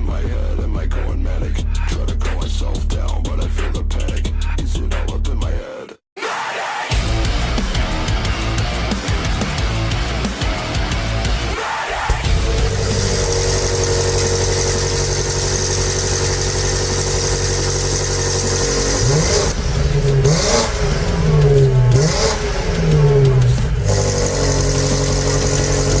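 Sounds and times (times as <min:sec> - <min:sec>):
car exhaust idling and revving: 0:07.0 - 0:26.0.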